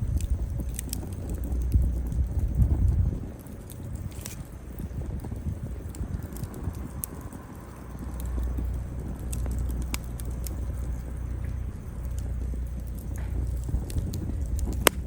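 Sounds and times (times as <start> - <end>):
low rumble: 0.0 - 15.0
wood fire crackling and popping: 0.0 - 15.0.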